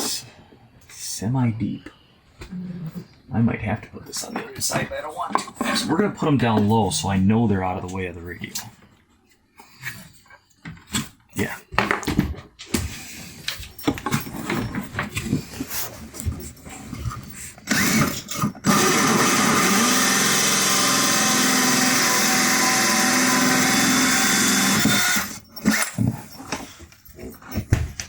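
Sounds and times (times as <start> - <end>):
handling knocks and clicks: 13.5 - 17.4, 25.4 - 28.0
drill cutting with hole saw: 17.7 - 26.0.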